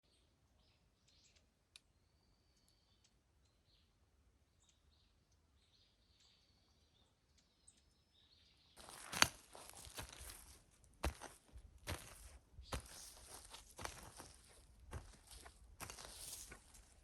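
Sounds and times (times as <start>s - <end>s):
faint small bird chirps: 0.0s - 8.9s
footsteps crunching on forest floor: 8.8s - 17.0s.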